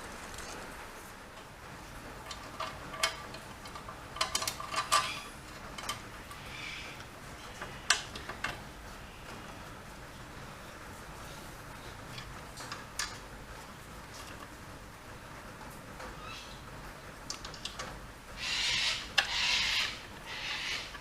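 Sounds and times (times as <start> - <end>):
metal tools clinking: 2.3 - 6.0.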